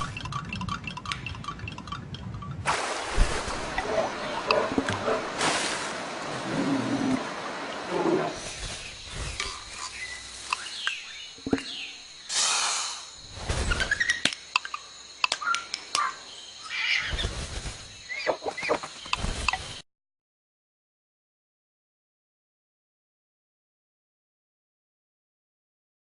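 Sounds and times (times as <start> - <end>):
sharp clicks: 14.2 - 16.1.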